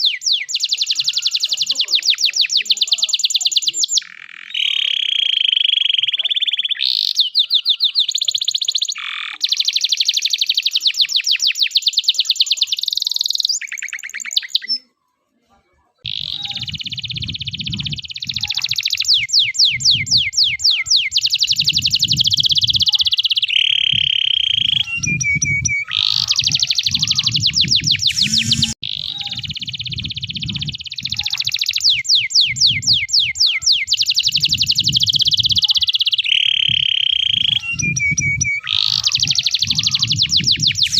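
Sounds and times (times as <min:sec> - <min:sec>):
canary singing trills: 0:00.0 - 0:15.0, 0:16.0 - 0:40.9
low rumbling noise: 0:16.1 - 0:18.6, 0:24.0 - 0:31.9.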